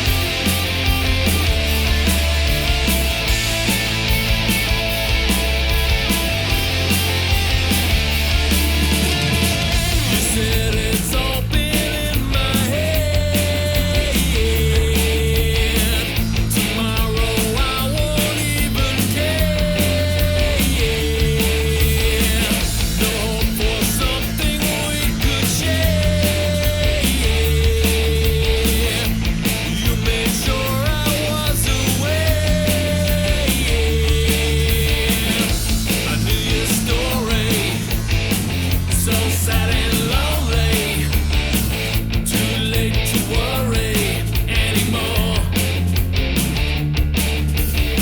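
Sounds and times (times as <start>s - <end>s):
rock music with distorted guitars: 0.0s - 48.0s.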